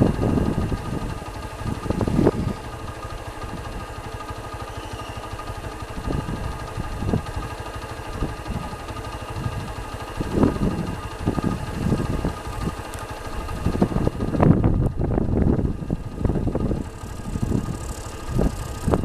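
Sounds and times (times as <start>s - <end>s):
combine harvester engine running: 0.0s - 19.0s.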